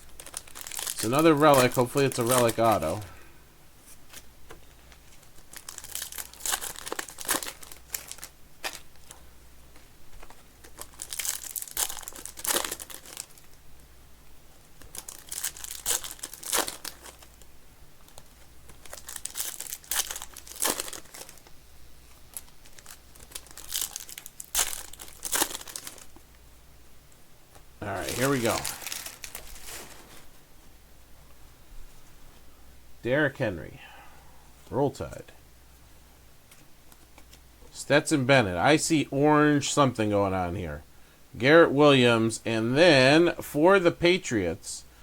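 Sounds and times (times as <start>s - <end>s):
plastic wrappers crinkling and tearing: 0.0s - 3.1s, 4.1s - 13.6s, 14.6s - 26.2s, 27.5s - 30.3s.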